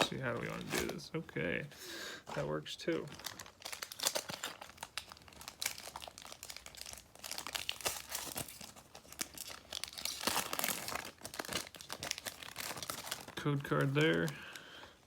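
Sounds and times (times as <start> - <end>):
foil wrapper tearing and crinkling: 2.9 - 14.8.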